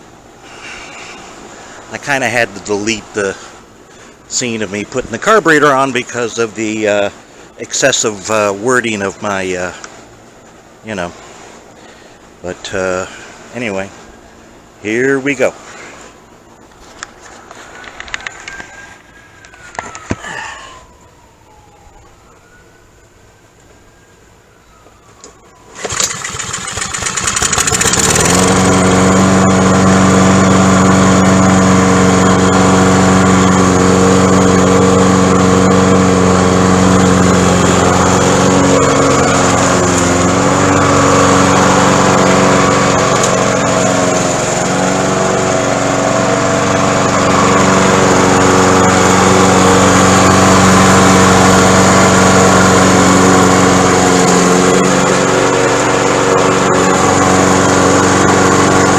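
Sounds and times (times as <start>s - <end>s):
lawn mower engine starting and running: 0.1s - 10.2s, 25.2s - 58.9s.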